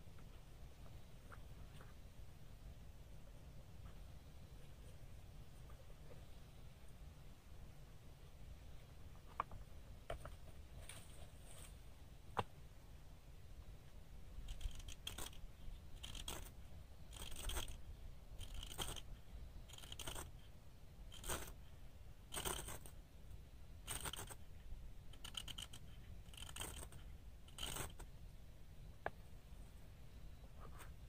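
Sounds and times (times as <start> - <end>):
scraping strokes: 25.2 - 28.1.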